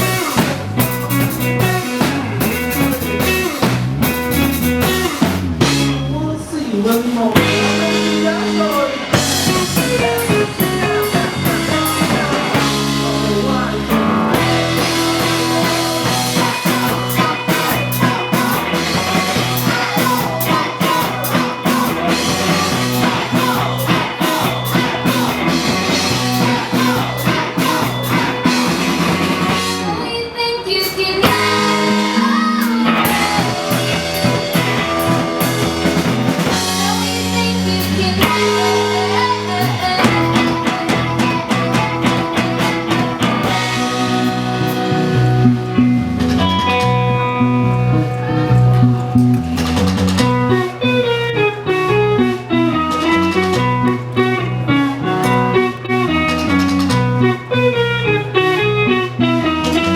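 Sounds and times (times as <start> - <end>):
drum kit: 0.0 - 30.2, 30.8 - 59.9
guitar: 0.0 - 59.9
person singing: 6.1 - 45.5.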